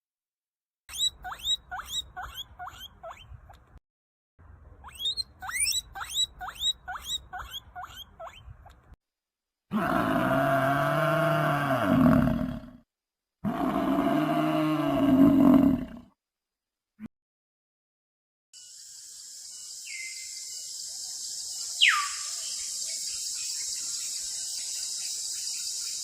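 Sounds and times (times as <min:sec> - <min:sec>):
squeaky chirps: 0:00.9 - 0:03.8, 0:04.8 - 0:09.0
roar-like animal calls: 0:09.7 - 0:12.8, 0:13.4 - 0:16.2.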